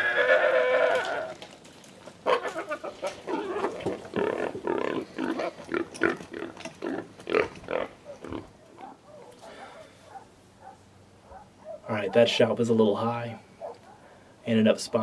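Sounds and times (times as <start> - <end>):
hog grunting and squealing: 2.3 - 9.9.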